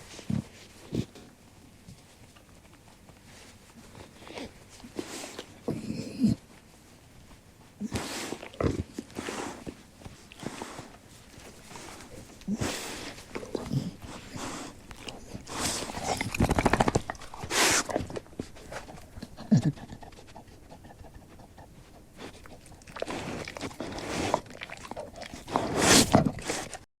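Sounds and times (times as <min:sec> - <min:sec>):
dog low vocal sound: 0:05.2 - 0:06.5, 0:11.6 - 0:26.8
dog panting: 0:07.9 - 0:26.8.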